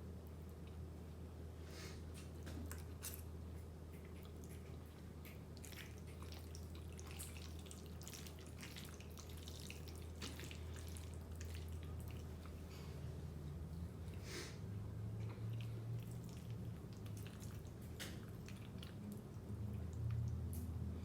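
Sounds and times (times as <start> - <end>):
steady low hum: 0.0 - 21.0
wet chewing and mouth clicks: 2.2 - 12.7, 15.2 - 20.7.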